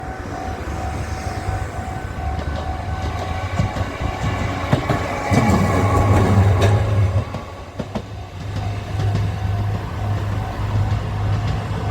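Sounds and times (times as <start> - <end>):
wheels clacking over rail joints: 0.9 - 11.9.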